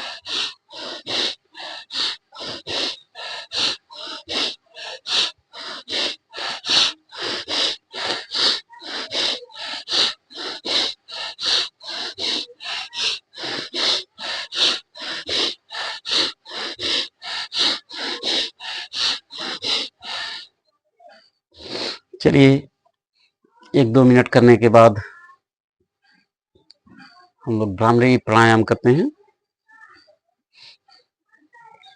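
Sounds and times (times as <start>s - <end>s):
person breathing fast through nose: 0.0s - 22.2s, 29.7s - 31.9s.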